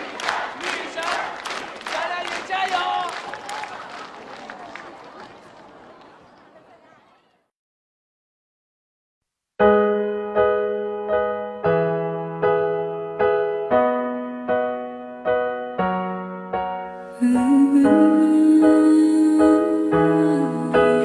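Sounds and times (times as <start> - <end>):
piano chords: 9.6 - 21.0.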